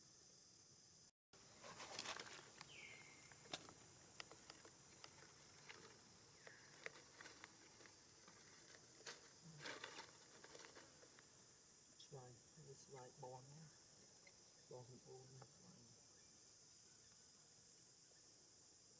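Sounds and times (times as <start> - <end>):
steady high hiss: 0.0 - 18.9
monkeys rustling and clicking: 1.6 - 11.3.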